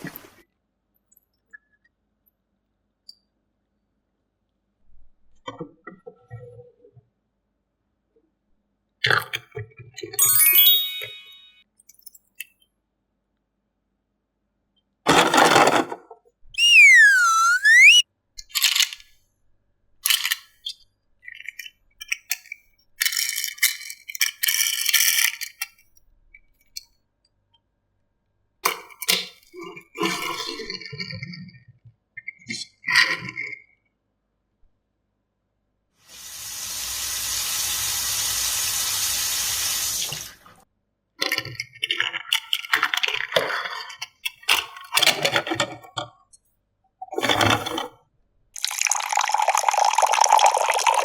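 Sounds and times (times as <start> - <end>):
bright sound effect: 10.2 - 11.6
toy cars clicking and rattling: 18.4 - 19.1, 20.0 - 20.5, 21.4 - 25.8, 41.2 - 45.8.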